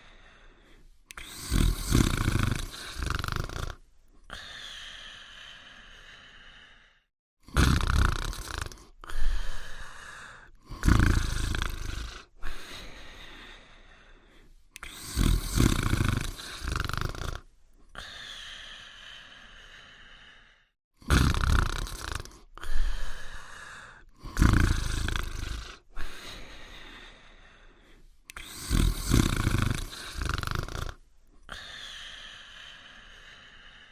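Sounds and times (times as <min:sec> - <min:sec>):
cartoon dog snoring: 0:01.1 - 0:04.6, 0:07.4 - 0:12.9, 0:14.8 - 0:18.3, 0:21.0 - 0:26.4, 0:28.3 - 0:31.8.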